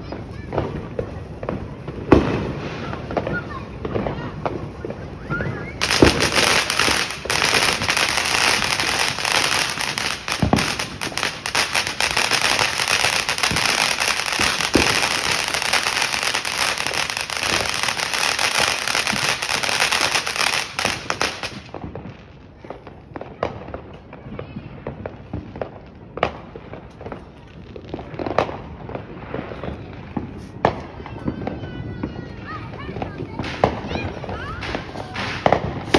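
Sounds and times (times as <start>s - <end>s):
fireworks bangs: 0.0s - 35.9s
fireworks crackling: 0.0s - 35.9s.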